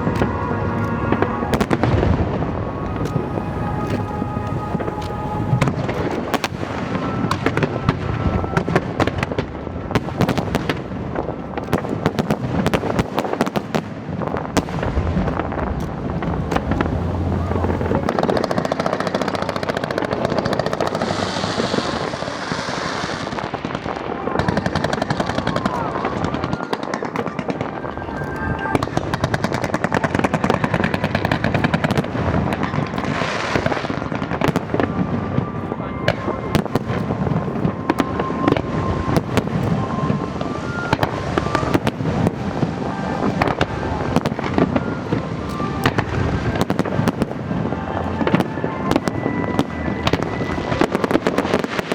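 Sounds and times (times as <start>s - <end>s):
music playing: 0.0s - 9.8s, 15.4s - 19.8s, 25.6s - 30.0s, 34.8s - 51.9s
fireworks bangs and crackles: 0.0s - 51.9s.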